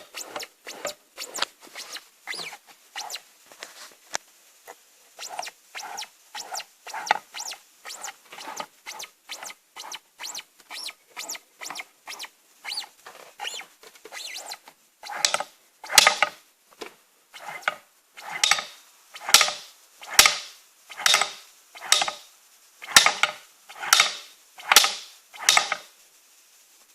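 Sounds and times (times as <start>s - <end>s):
scooter squeaking: 0.0s - 3.2s, 5.2s - 16.2s.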